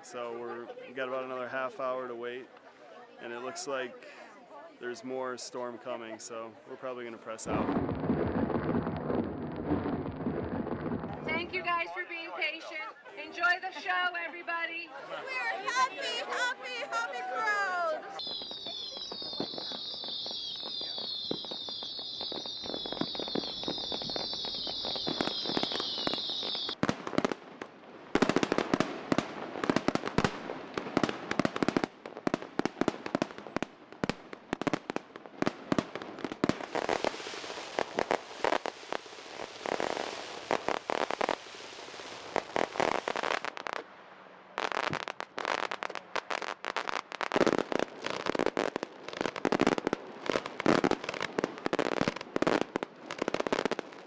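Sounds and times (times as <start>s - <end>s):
fireworks crackling and popping: 7.2s - 14.8s, 17.4s - 54.0s
firework bangs: 7.4s - 11.8s, 18.2s - 43.9s, 44.5s - 54.0s
high shrill chirping: 18.2s - 26.8s.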